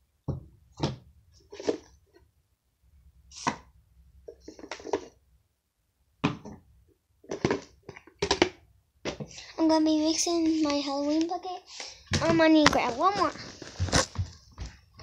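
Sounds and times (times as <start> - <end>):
plastic containers knocking: 7.3 - 9.3, 12.1 - 14.8.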